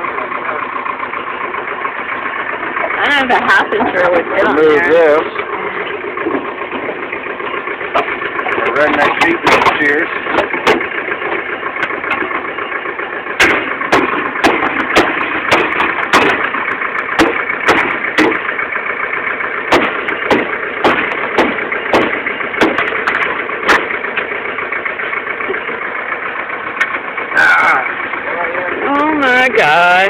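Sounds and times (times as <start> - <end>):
tractor engine idling: 0.0 - 30.0
sharp knocks or snips: 9.0 - 10.9, 13.4 - 16.6, 17.2 - 18.4, 19.7 - 23.9.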